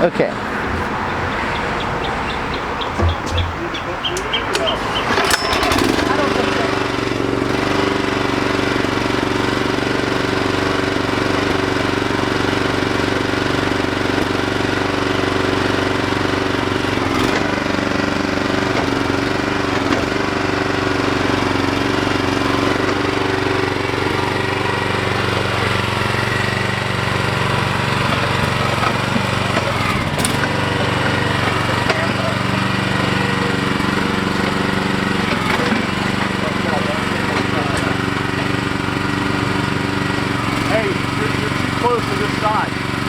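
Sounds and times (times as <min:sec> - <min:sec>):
mini excavator engine running: 0:00.0 - 0:43.0
brief knocks: 0:02.9 - 0:04.7.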